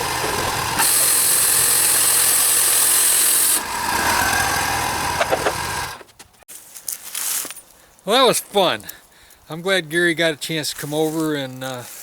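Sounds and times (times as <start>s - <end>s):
sawmill engine running: 0.0s - 6.1s.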